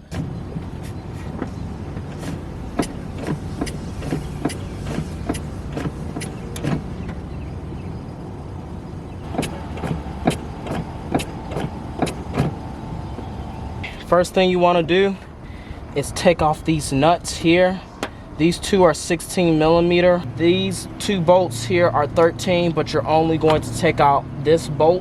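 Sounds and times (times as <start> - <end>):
sharp clicks and knocks: 0.0 - 7.2, 9.3 - 13.3
car engine idling: 0.0 - 25.0.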